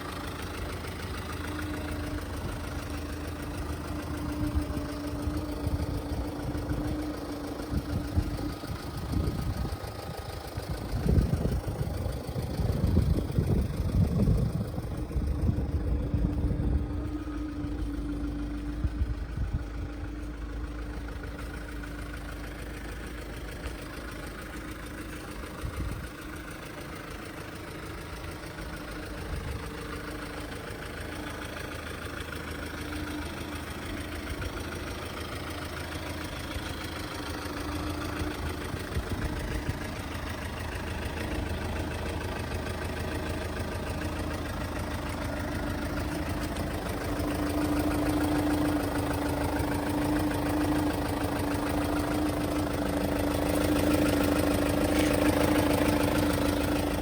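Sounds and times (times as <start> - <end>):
wind buffeting microphone: 7.7 - 17.1.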